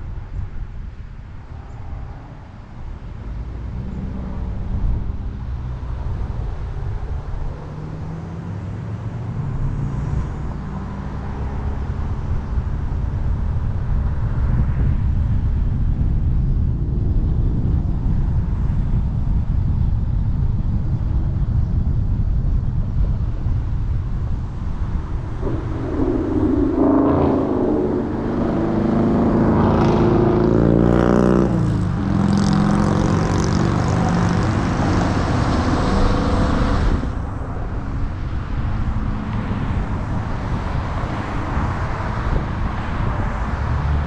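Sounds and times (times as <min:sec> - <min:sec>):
tyre and wind noise: 0:09.2 - 0:44.0
car engine accelerating: 0:23.8 - 0:42.6.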